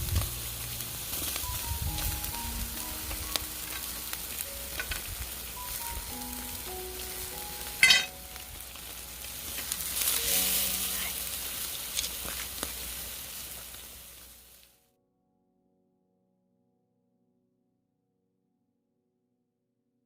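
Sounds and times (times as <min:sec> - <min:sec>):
fish sizzling over fire: 0:00.0 - 0:14.8
soft slow music: 0:00.0 - 0:17.6.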